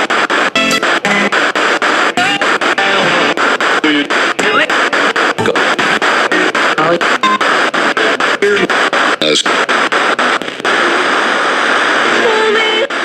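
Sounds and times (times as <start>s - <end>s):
radio static hiss: 0.0s - 13.0s
faint announcer voice on radio: 7.8s - 9.6s.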